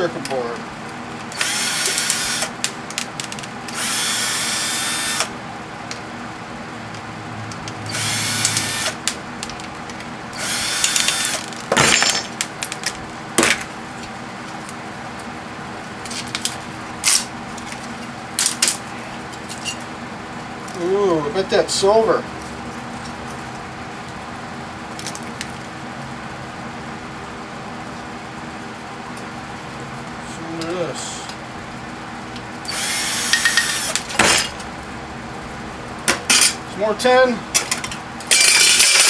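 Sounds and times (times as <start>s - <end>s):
cordless drill running: 1.3s - 2.6s, 3.7s - 5.3s, 7.9s - 9.1s, 10.3s - 11.5s, 32.6s - 34.0s
clicks and knocks of loose parts: 10.8s - 13.7s, 37.5s - 39.0s.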